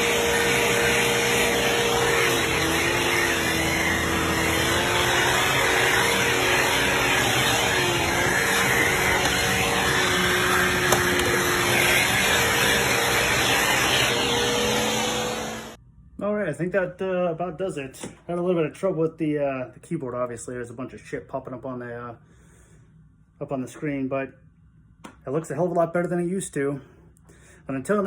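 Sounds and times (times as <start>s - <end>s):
vacuum cleaner running: 0.0s - 15.8s.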